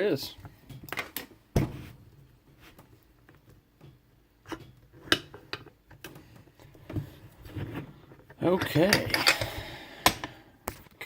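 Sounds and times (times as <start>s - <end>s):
dull thump: 1.5s - 1.9s.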